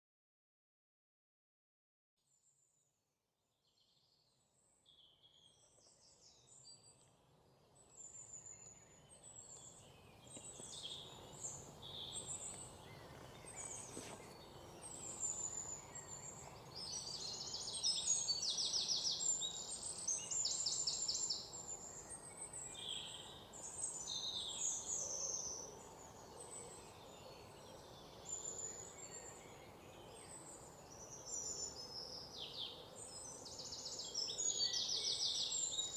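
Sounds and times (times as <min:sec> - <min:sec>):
songbirds chirping and singing: 0:04.1 - 0:35.9.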